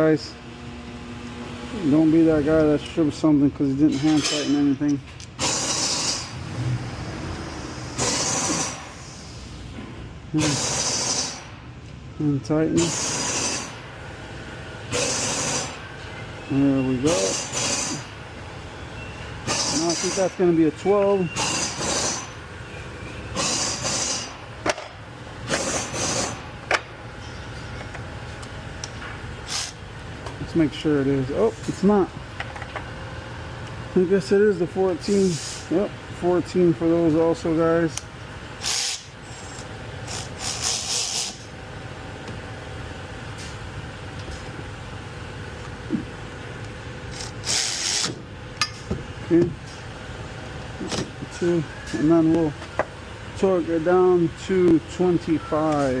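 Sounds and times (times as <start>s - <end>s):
metal tools rattling and scraping: 3.6s - 6.2s.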